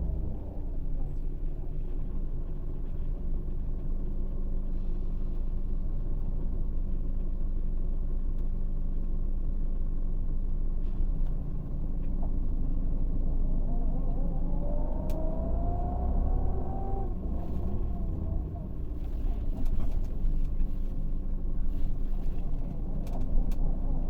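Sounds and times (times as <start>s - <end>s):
diesel bus engine rumbling: 0.0s - 24.0s
rising engine whine: 11.2s - 20.5s.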